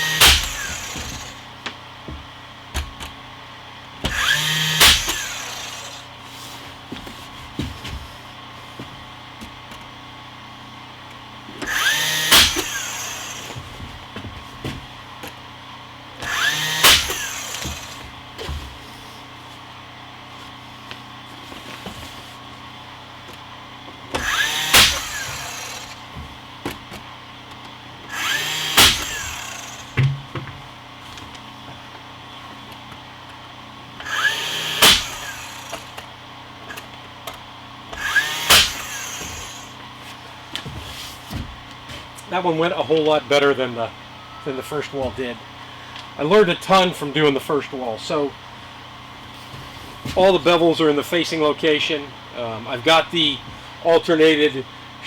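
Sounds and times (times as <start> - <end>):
power tool motor whine: 0.0 - 8.5, 9.6 - 42.2
sharp crack: 0.2 - 1.4, 4.8 - 5.6, 12.3 - 12.9, 16.8 - 18.0, 24.7 - 26.0, 28.7 - 30.0, 34.8 - 35.8, 38.4 - 39.0.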